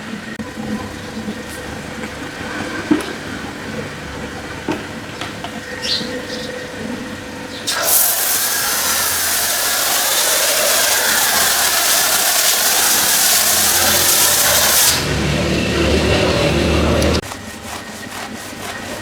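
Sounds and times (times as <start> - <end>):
pressure washer spraying water: 7.7 - 19.0.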